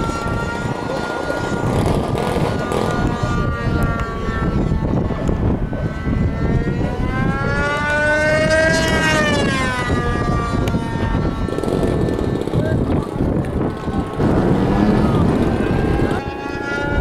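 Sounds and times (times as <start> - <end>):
model airplane engine buzzing: 0.0 - 17.0
wind noise on microphone: 0.0 - 17.0.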